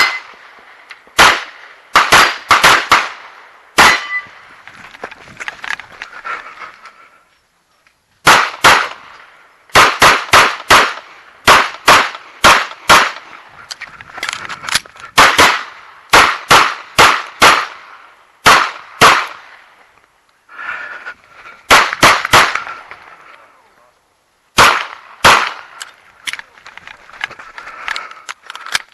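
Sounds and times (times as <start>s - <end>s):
rapid pistol shots: 1.2s - 4.2s, 8.2s - 9.1s, 9.7s - 13.3s, 15.2s - 19.6s, 21.7s - 22.7s, 24.6s - 25.8s.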